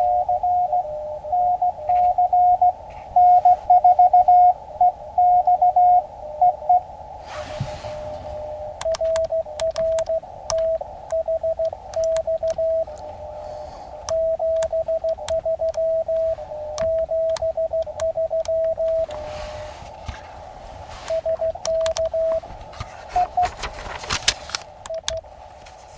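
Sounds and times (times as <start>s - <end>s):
morse code tone: 0.0s - 19.7s, 21.0s - 22.5s, 23.1s - 23.7s, 24.9s - 25.2s
receiver hiss: 0.0s - 25.9s
keying clicks: 8.8s - 13.2s, 14.0s - 19.3s, 21.1s - 22.4s, 23.2s - 25.3s.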